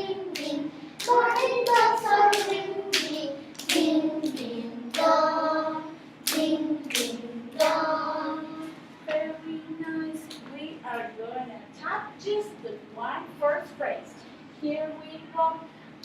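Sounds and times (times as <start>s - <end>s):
children singing together: 0.0s - 8.7s
hands clapping the beat: 0.3s - 5.2s, 6.2s - 7.8s.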